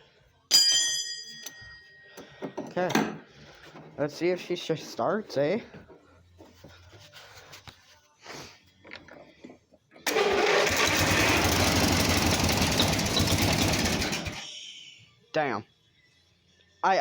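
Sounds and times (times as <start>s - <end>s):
garden tractor engine running: 10.0s - 14.4s.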